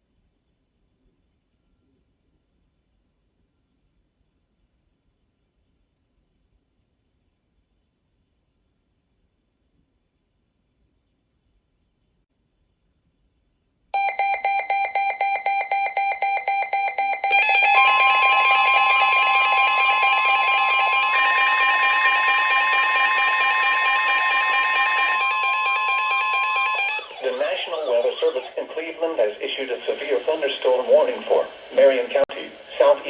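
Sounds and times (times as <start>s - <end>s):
layered alarm tone: 14.0s - 28.5s
pulsing electronic tone: 14.0s - 28.5s.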